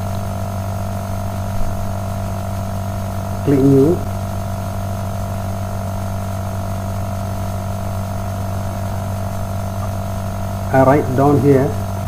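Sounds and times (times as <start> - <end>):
electrical mains hum and buzz: 0.0 - 12.0.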